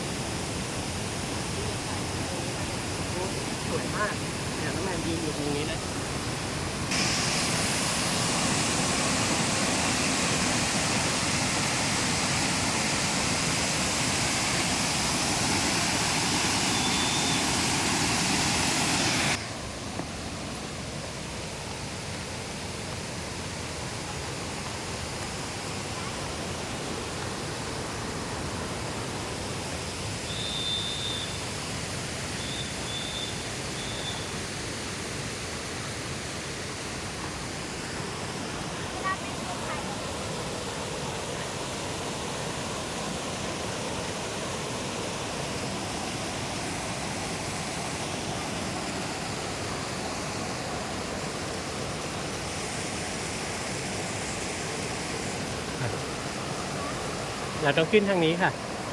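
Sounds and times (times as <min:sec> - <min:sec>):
waterfall rushing: 0:00.0 - 0:58.9
faint high chirps: 0:16.6 - 0:17.7, 0:30.2 - 0:31.4, 0:32.4 - 0:34.4.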